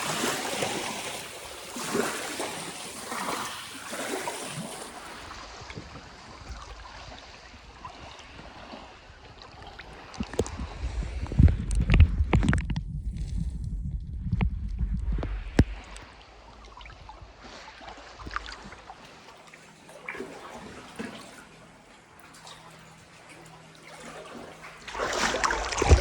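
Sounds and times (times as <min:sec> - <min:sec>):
small waves lapping at shore: 0:00.0 - 0:11.3, 0:15.3 - 0:26.0
low rumble: 0:10.3 - 0:17.4.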